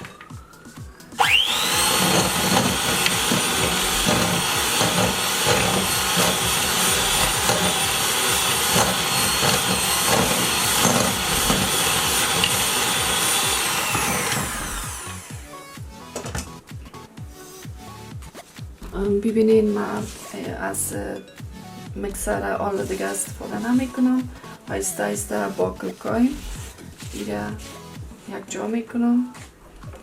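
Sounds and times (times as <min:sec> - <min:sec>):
electric hand mixer whining: 0:00.0 - 0:16.6, 0:22.2 - 0:24.4, 0:25.4 - 0:28.0.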